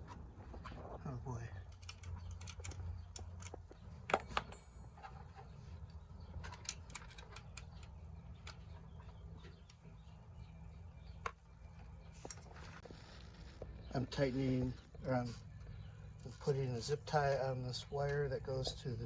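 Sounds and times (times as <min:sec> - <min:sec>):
tools and parts clicking and knocking: 0:01.6 - 0:08.8, 0:16.2 - 0:17.4.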